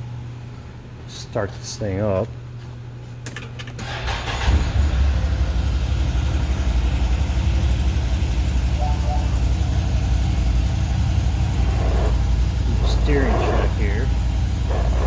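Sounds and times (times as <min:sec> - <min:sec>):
engine starting and idling: 0:03.7 - 0:08.0.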